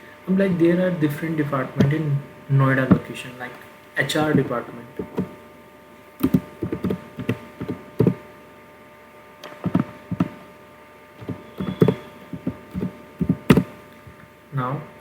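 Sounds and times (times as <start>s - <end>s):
steady electrical hum: 0.0s - 15.0s
keyboard typing: 6.2s - 8.2s, 9.4s - 10.4s, 11.2s - 14.2s.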